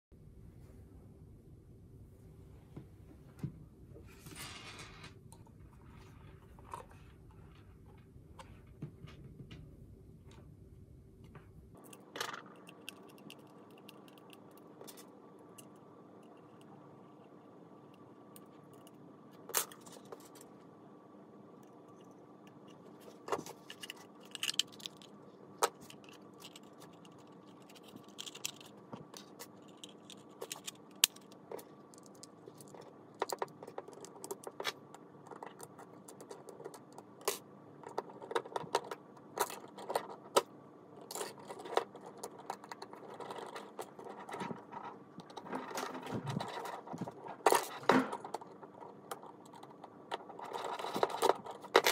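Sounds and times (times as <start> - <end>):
faint steady hum: 0.1 - 51.9
plastic parts clicking and scraping: 11.8 - 20.6, 21.9 - 51.9.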